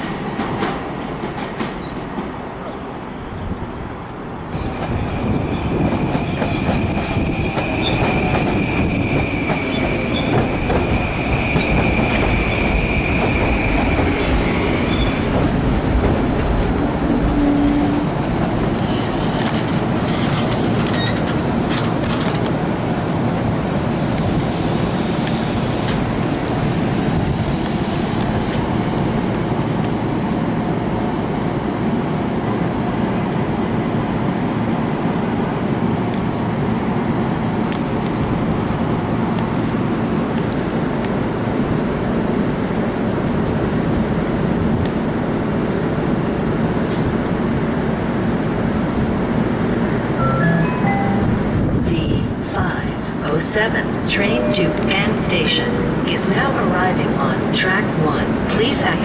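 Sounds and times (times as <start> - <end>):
train rumble and wheel clatter: 0.0 - 59.0
high wheel squeal: 16.9 - 22.4.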